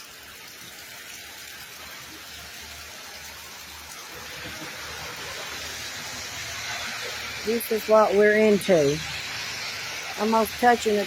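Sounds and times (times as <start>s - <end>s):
flooded creek rushing: 0.0s - 11.0s.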